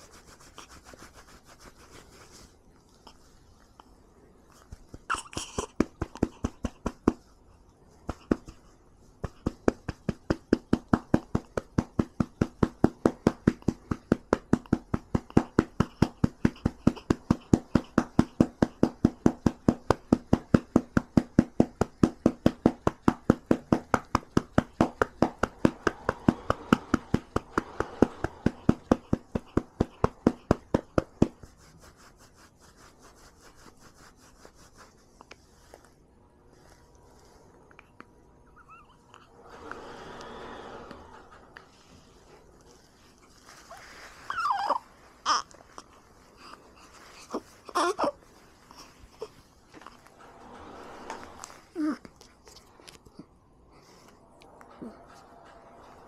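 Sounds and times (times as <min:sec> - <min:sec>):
hand patting baby's back: 0:04.7 - 0:07.2.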